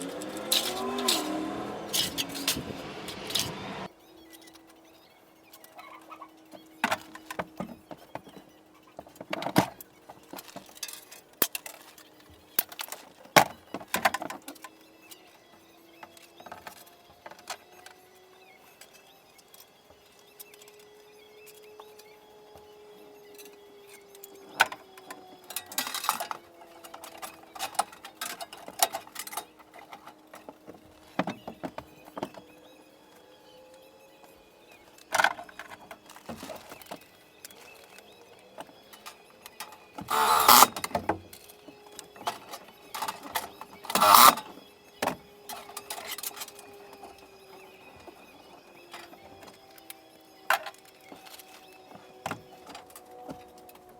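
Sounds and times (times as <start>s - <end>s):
scraping or rustling noise: 0.0s - 3.9s.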